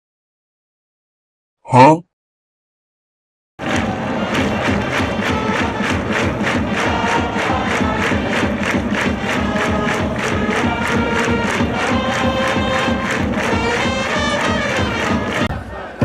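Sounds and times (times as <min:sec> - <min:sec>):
upbeat music with fast beat: 0:03.6 - 0:15.5.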